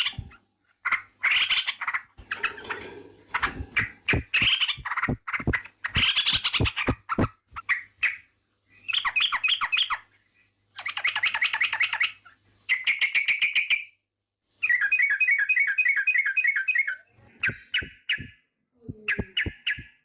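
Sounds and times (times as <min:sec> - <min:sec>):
bird chattering song: 0:00.0 - 0:02.8, 0:03.4 - 0:14.0, 0:14.6 - 0:20.0.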